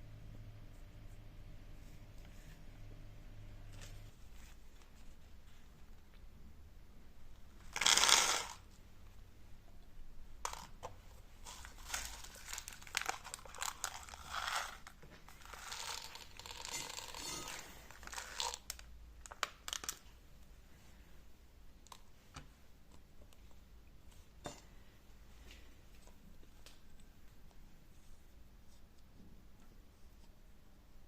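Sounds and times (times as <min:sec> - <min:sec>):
rustling and crinkling handling: 0:11.1 - 0:20.2.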